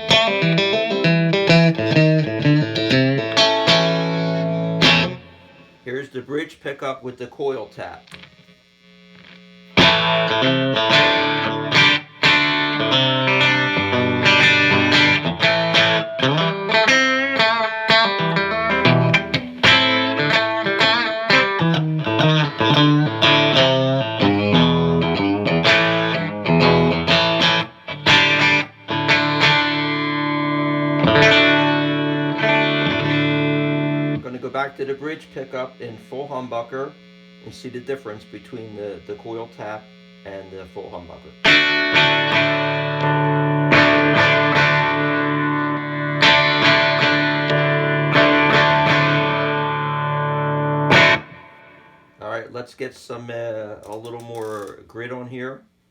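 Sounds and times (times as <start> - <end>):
electric guitar playing: 0.0 - 5.8, 9.2 - 35.8, 41.4 - 52.2.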